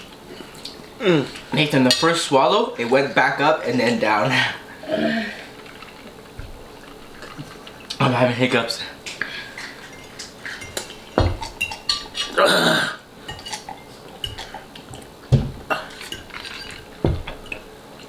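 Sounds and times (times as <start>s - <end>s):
cutlery clinking against bowls: 9.1s - 12.4s, 13.2s - 17.7s
dull knocks: 15.3s - 15.8s, 17.0s - 17.7s.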